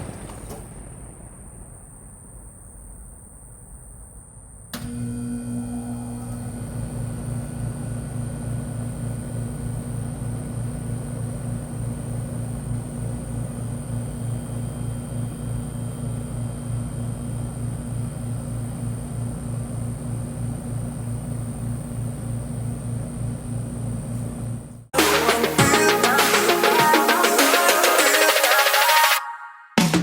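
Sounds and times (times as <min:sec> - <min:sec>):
air conditioner pulsing hum: 0:04.6 - 0:24.9.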